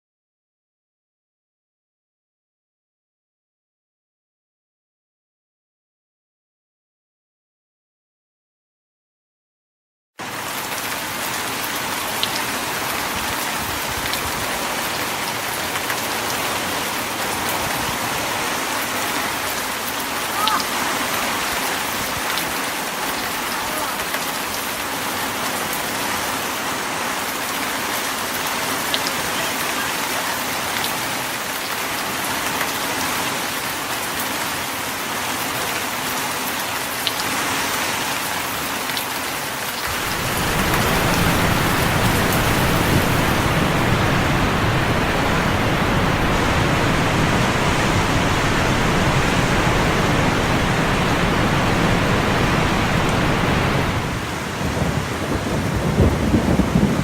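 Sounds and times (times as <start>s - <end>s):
heavy rain hissing: 10.2s - 33.5s, 39.6s - 56.9s.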